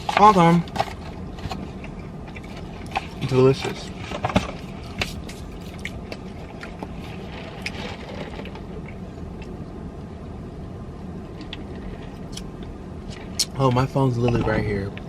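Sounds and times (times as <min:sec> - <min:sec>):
steady low hum: 0:00.0 - 0:15.0
soft chewing: 0:00.7 - 0:09.8.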